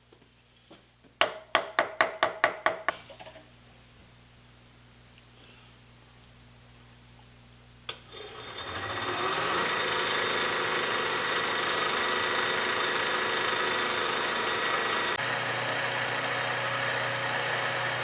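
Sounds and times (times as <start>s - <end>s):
air compressor running: 8.0s - 18.0s.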